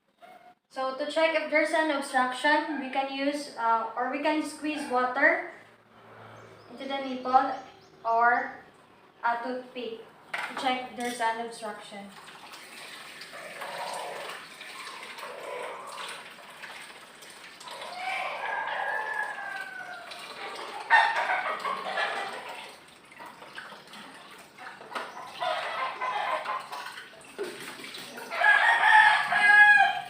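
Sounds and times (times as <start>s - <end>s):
water splashing in a basin: 12.0s - 29.7s
rooster crowing: 17.7s - 22.7s, 28.3s - 30.0s.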